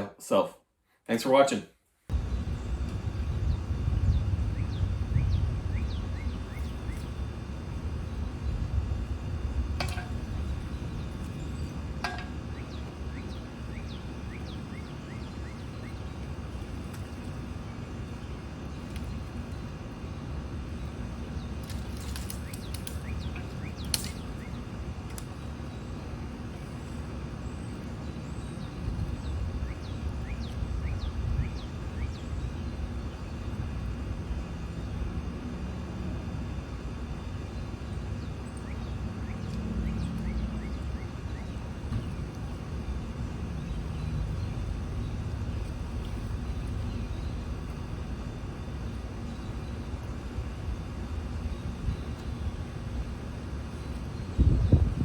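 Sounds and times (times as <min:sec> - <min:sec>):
low rumble: 0:02.1 - 0:12.4
bird chirps: 0:02.2 - 0:07.2, 0:12.3 - 0:16.1.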